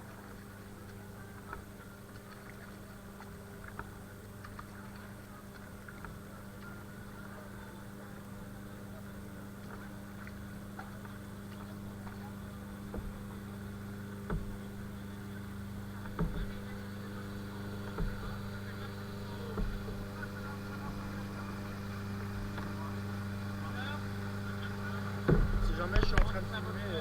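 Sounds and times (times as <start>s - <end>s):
low engine hum: 0.0s - 27.0s
soft knock: 14.2s - 14.7s, 25.3s - 26.4s.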